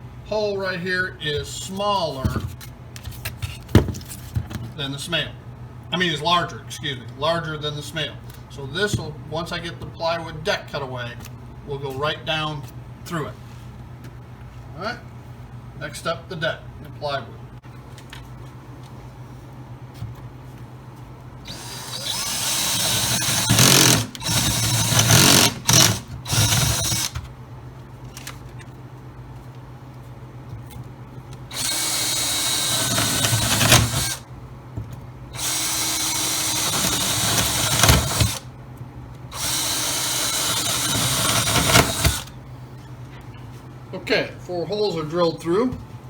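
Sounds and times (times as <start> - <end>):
power drill boring through plywood: 21.5 - 27.2, 31.5 - 34.2, 35.4 - 38.4, 39.3 - 42.3.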